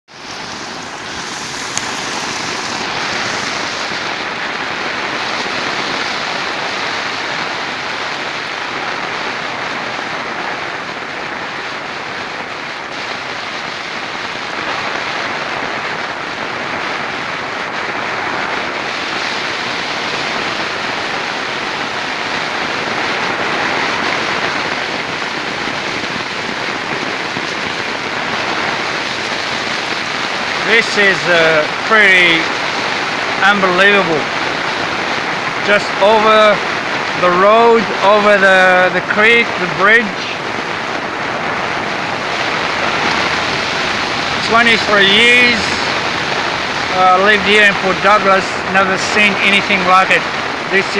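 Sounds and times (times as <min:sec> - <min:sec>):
heavy rain pouring: 0:00.0 - 0:50.9.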